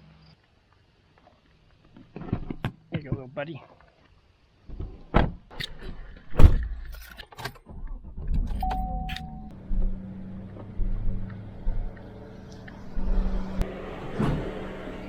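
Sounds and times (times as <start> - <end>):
doors and gear thumping: 8.2 - 15.0
short steady beep: 8.6 - 9.5
truck engine humming: 8.6 - 15.0.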